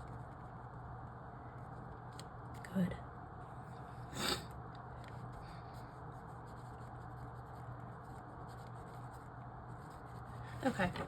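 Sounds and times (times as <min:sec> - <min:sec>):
low steady hum: 0:00.0 - 0:11.0
pen scratching on paper: 0:05.8 - 0:11.0.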